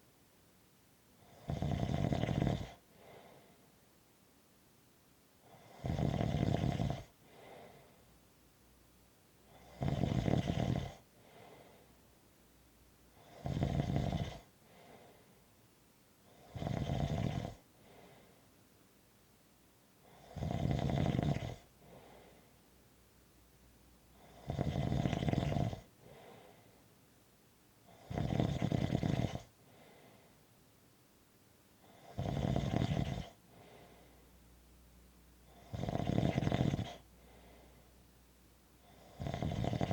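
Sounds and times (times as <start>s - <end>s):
rasping snores: 1.2s - 3.2s, 5.4s - 7.8s, 9.5s - 11.6s, 13.1s - 15.1s, 16.3s - 18.1s, 20.0s - 22.3s, 24.1s - 26.6s, 27.9s - 30.0s, 31.8s - 34.0s, 35.4s - 37.6s, 38.8s - 39.9s
soft breath out: 2.9s - 3.8s, 7.2s - 8.1s, 11.1s - 12.1s, 14.6s - 15.5s, 17.8s - 18.6s, 21.8s - 22.7s, 26.0s - 27.0s, 29.6s - 30.5s, 33.4s - 34.4s, 37.0s - 38.1s.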